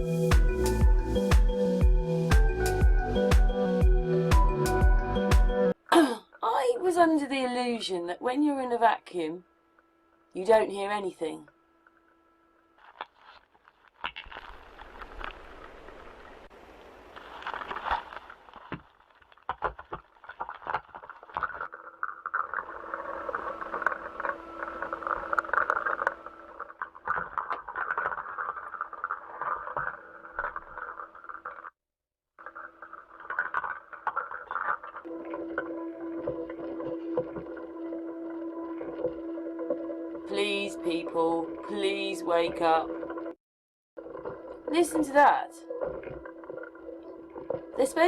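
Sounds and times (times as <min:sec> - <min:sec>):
crackling hiss: 0:12.8 - 0:31.7
steady hum: 0:22.7 - 0:26.8.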